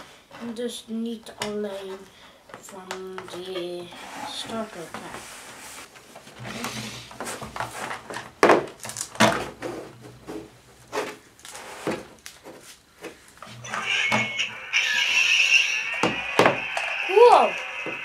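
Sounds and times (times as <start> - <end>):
high-pitched electronic sound effect: 13.6 - 18.0.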